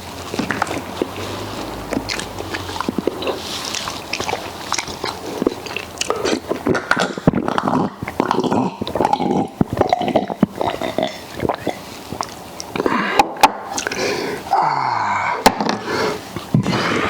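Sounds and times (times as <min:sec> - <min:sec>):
person chewing food: 0:00.0 - 0:14.1
wet mouth smacks: 0:00.3 - 0:14.0.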